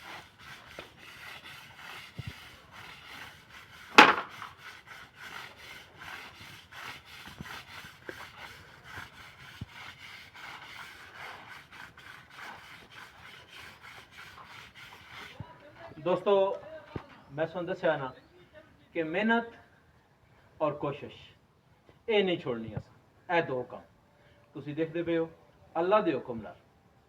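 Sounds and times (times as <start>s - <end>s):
rhythmic scraping strokes: 0.0s - 17.3s
loud sharp knock: 4.0s - 4.3s.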